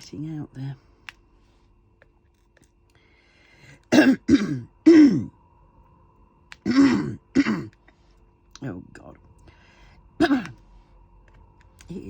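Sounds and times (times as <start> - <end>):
woman coughing: 3.9 - 5.3, 6.6 - 7.7, 10.2 - 10.6.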